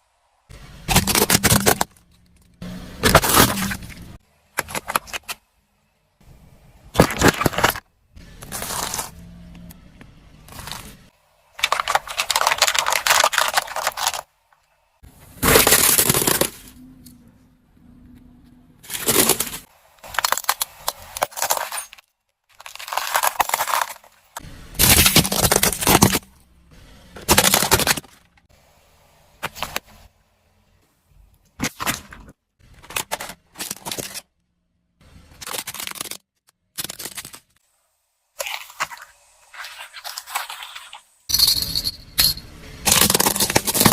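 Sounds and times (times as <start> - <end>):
plastic crunching under car tyres: 0.9 - 5.4, 6.9 - 9.3, 10.4 - 14.3, 15.3 - 16.8, 18.8 - 26.4, 27.2 - 28.4, 42.8 - 43.9.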